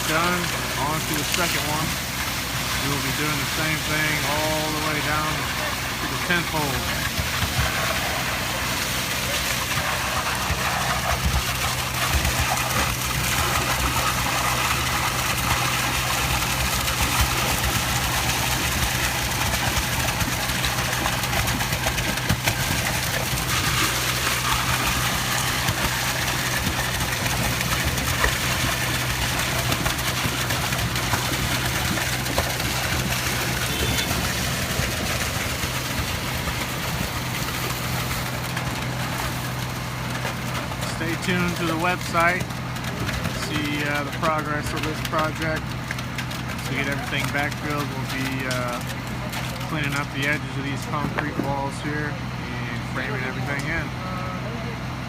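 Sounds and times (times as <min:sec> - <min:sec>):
diesel engine running steadily: 0:00.0 - 0:55.0.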